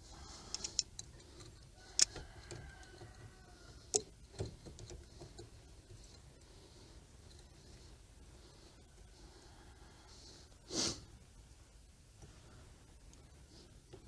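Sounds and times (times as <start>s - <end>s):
metal bolts and tools clinking: 0.5s - 3.1s.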